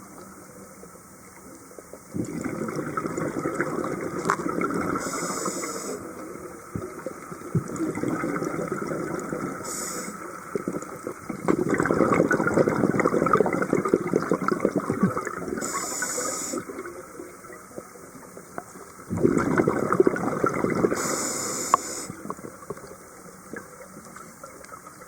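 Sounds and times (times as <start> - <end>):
exhaled bubbles underwater: 2.0 - 25.0
regulator inhalation hiss: 5.0 - 6.1, 9.6 - 10.4, 15.6 - 16.7, 21.0 - 22.2.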